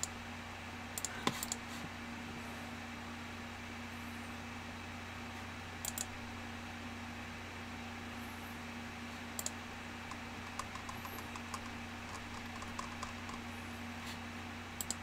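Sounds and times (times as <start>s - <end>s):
electrical hum: 0.0s - 15.0s
computer keys clicking: 5.8s - 6.1s, 9.4s - 13.4s, 14.8s - 15.0s.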